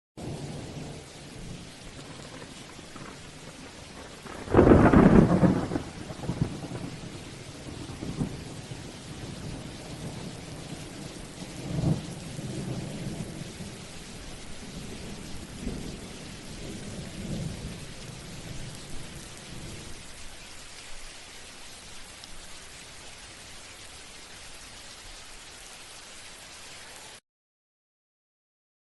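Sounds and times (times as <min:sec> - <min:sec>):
thunderclap and rumble: 0:00.2 - 0:20.0
rain hiss: 0:00.2 - 0:27.2.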